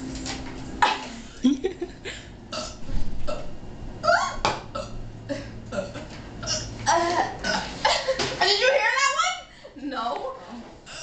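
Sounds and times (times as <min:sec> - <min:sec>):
laughter: 0:01.4 - 0:02.3
girl burping: 0:02.5 - 0:07.7.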